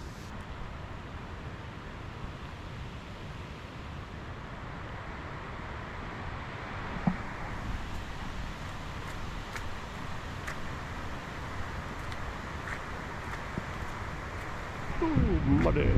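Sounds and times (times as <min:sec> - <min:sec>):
water rushing: 0:06.6 - 0:15.9
wind buffeting microphone: 0:07.1 - 0:15.9.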